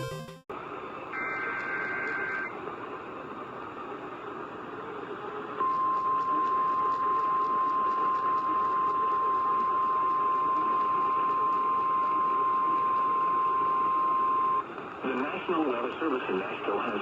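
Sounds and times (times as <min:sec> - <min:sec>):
radio hiss: 0:15.0 - 0:17.0.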